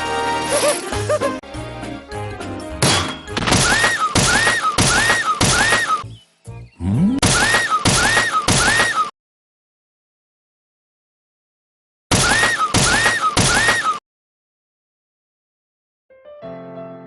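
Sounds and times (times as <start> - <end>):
looped cartoon sound bite: 6.8 - 9.0.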